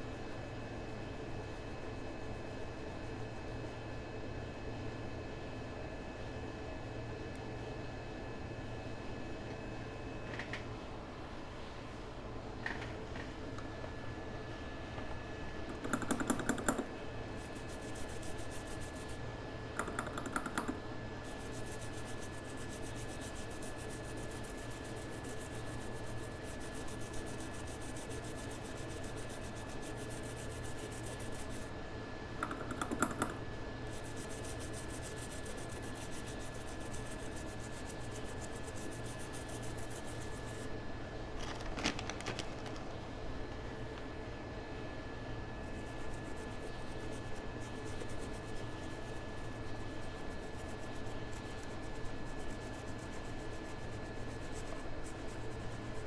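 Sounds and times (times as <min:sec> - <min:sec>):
steady background hum: 0:00.0 - 0:56.0
typing on computer keyboard: 0:15.7 - 0:16.9, 0:19.8 - 0:20.8, 0:32.4 - 0:33.4.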